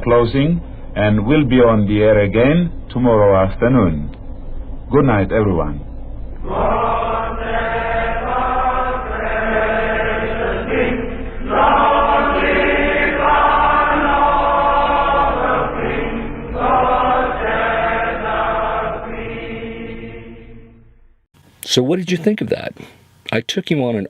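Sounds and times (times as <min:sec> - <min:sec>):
choir chanting over radio: 0:00.0 - 0:20.8
low hum: 0:00.0 - 0:21.6.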